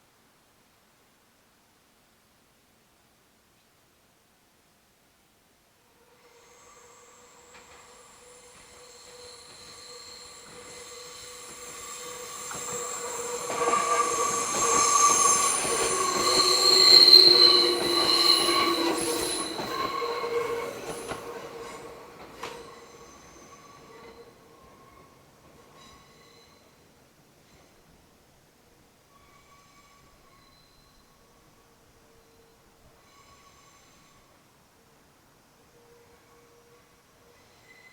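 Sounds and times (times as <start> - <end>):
train wheels squealing: 6.2 - 27.8, 29.1 - 34.4, 35.8 - 37.9
train rolling rumble: 7.0 - 26.2.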